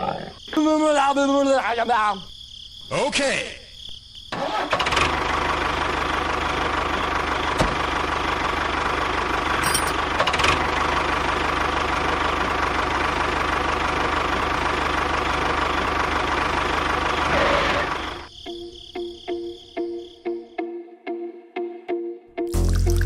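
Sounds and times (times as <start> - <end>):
small engine running: 4.4 - 18.3.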